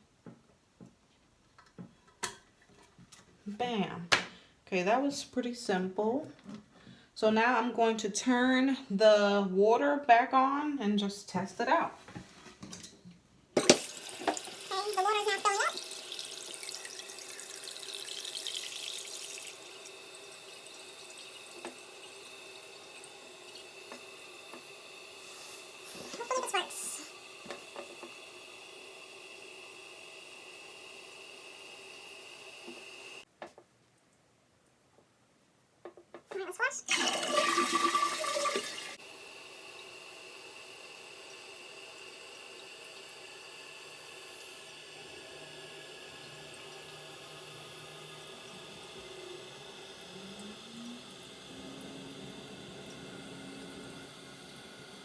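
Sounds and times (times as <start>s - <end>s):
toilet tank refilling: 13.6s - 33.2s, 36.6s - 55.0s.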